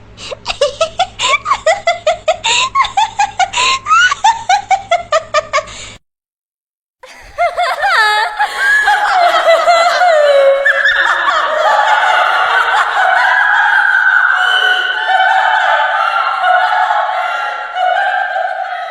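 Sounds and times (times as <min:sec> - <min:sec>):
woman cackling: 0:07.0 - 0:11.3.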